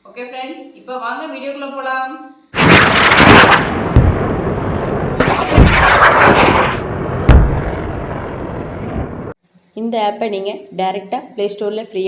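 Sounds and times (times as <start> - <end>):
booming blasts: 2.6 - 9.4
heavy low thuds: 3.7 - 9.3.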